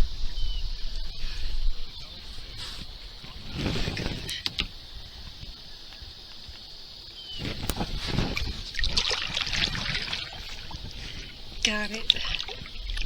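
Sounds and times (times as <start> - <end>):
kayak paddle splashing in water: 7.4 - 13.0.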